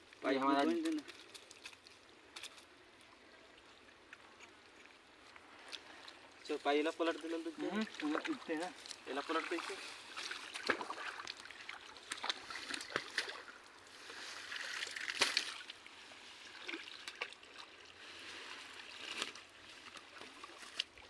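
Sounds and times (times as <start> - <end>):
pond water splashing and trickling: 0.0 - 21.0
sharp water splashes: 6.6 - 17.8.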